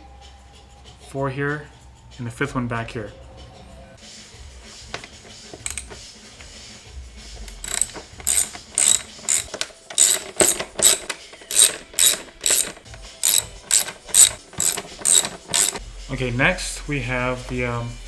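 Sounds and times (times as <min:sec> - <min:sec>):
ratchet clicking: 0:05.6 - 0:06.0, 0:07.5 - 0:15.8.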